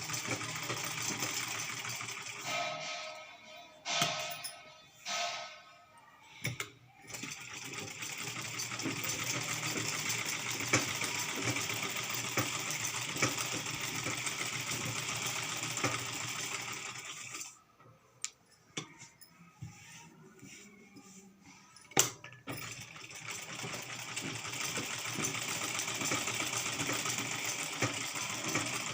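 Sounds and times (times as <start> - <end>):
sewing machine stitching: 0.0 - 2.7, 7.1 - 17.6, 22.4 - 28.9.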